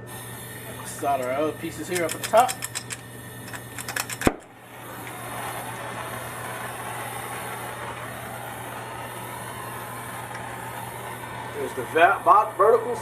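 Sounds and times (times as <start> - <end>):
torch flame hissing: 0.0 - 13.0
torch igniter click: 0.8 - 5.5.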